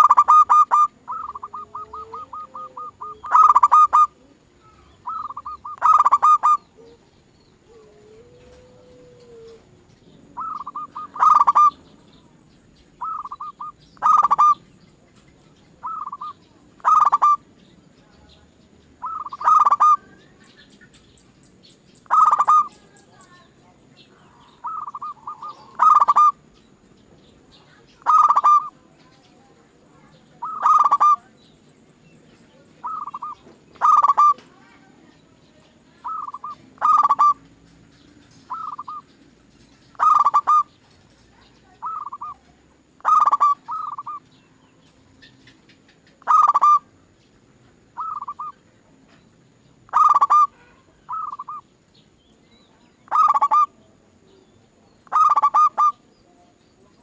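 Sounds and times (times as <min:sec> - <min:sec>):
dove cooing: 0:00.0 - 0:12.0, 0:13.0 - 0:14.6, 0:15.8 - 0:17.4, 0:19.0 - 0:20.2, 0:22.0 - 0:23.4, 0:24.3 - 0:26.5, 0:28.0 - 0:28.9, 0:30.3 - 0:31.4, 0:32.8 - 0:34.8, 0:36.0 - 0:37.5, 0:38.2 - 0:39.1, 0:39.9 - 0:44.2, 0:46.1 - 0:46.9, 0:48.0 - 0:48.6, 0:49.9 - 0:51.6, 0:53.1 - 0:53.8, 0:55.0 - 0:56.1.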